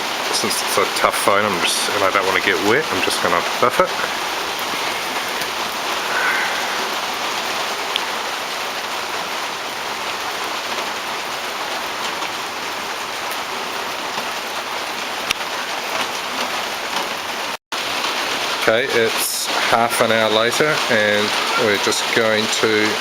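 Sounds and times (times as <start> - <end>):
raindrop ticks: 0.0 - 6.4, 7.0 - 8.3, 13.0 - 23.0
heavy rain on hard surfaces: 0.0 - 23.0.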